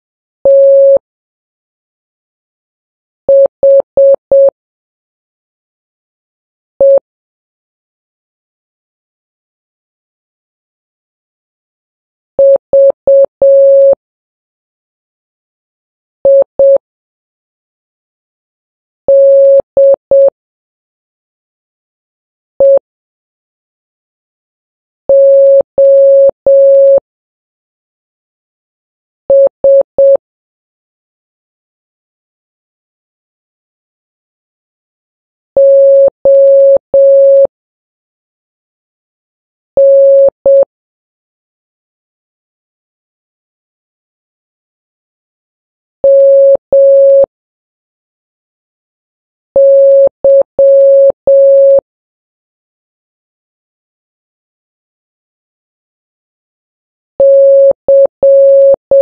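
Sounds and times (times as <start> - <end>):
morse code beeps: 0.5 - 1.0, 3.3 - 4.5, 12.4 - 14.0, 16.3 - 16.8, 19.1 - 20.3, 22.6 - 22.8, 25.1 - 27.0, 29.3 - 30.2, 35.6 - 37.5, 39.8 - 40.7, 46.0 - 47.3, 49.6 - 51.8, 57.2 - 59.0.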